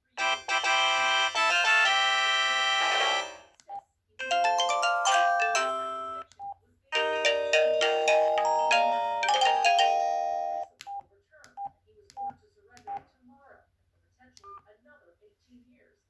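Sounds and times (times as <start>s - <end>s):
polyphonic phone ringtone melodies: 0.2s - 3.5s, 4.2s - 6.3s, 7.0s - 10.7s.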